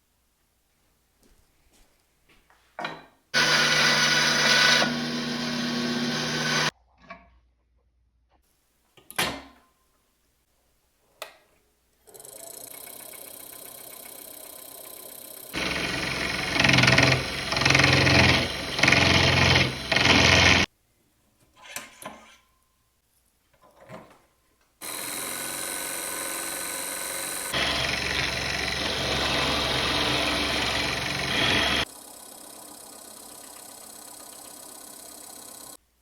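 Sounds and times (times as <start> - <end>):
turning tool cutting wood: 3.4 - 6.7, 12.2 - 20.7, 24.8 - 35.8
wood lathe turning: 3.4 - 6.7, 12.1 - 20.7, 24.8 - 35.8.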